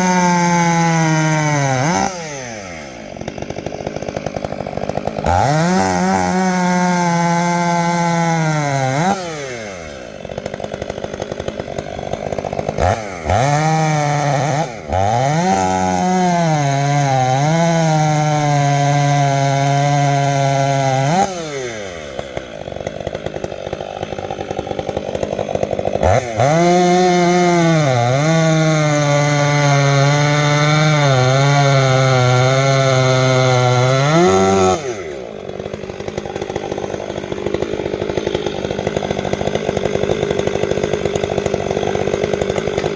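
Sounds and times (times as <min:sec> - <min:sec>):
chain cutting wood: 0:00.0 - 0:42.9
chainsaw idling and revving: 0:00.0 - 0:42.9.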